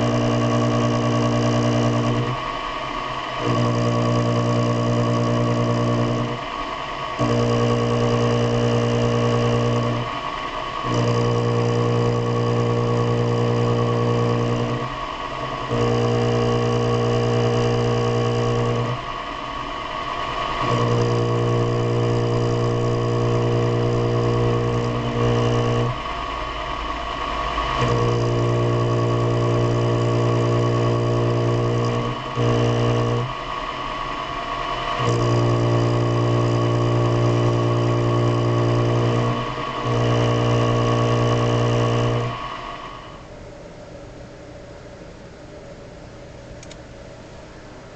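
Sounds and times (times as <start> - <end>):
machine tool motor humming: 0.0 - 43.3
high motor whine: 0.0 - 43.6.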